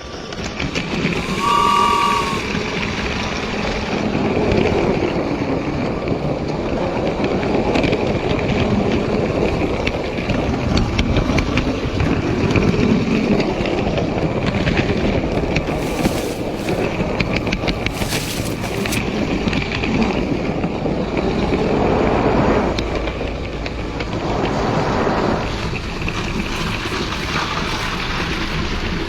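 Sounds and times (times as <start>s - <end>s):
train horn toot: 1.1s - 2.8s, 15.4s - 19.4s, 26.0s - 29.0s.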